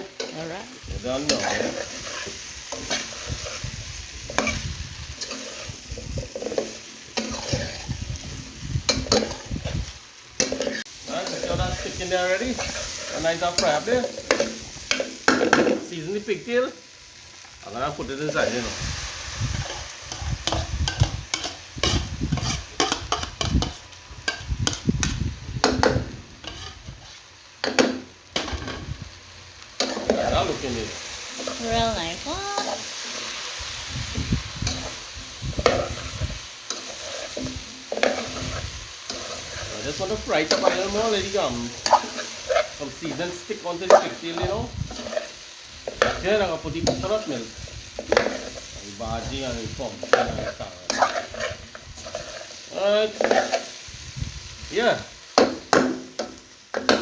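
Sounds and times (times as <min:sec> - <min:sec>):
food sizzling in a pot: 0:00.0 - 0:57.0
spoon scraping a pot: 0:01.2 - 0:03.7, 0:04.3 - 0:08.0, 0:08.9 - 0:15.5, 0:19.6 - 0:24.8, 0:25.8 - 0:28.8, 0:34.6 - 0:43.2, 0:50.0 - 0:53.7.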